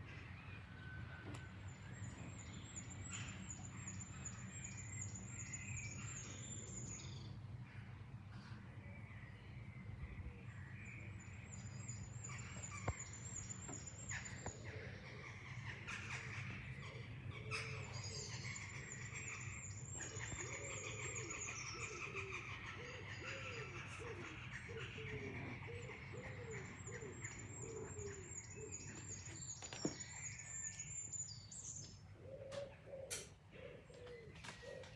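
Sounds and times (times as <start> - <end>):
small birds chirping and singing: 0.0 - 34.9
pigeon cooing: 19.9 - 29.4, 32.1 - 34.9.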